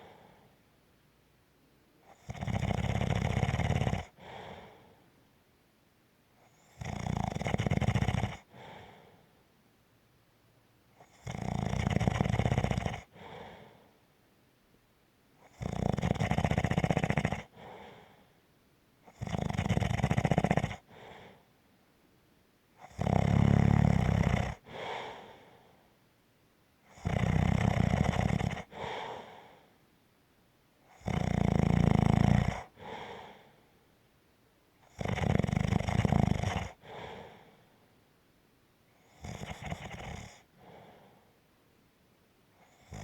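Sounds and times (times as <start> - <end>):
soft breath: 0.0 - 0.7, 4.1 - 5.2, 8.4 - 9.6, 13.0 - 14.1, 17.4 - 18.5, 20.8 - 21.6, 24.6 - 26.1, 28.6 - 29.9, 32.6 - 34.0, 36.7 - 38.0, 39.0 - 41.6
loud snoring: 2.1 - 4.8, 6.5 - 8.9, 11.0 - 13.6, 15.4 - 18.0, 19.1 - 21.3, 22.8 - 25.4, 26.9 - 29.5, 30.9 - 33.3, 34.8 - 37.4, 39.0 - 40.9, 42.6 - 43.0.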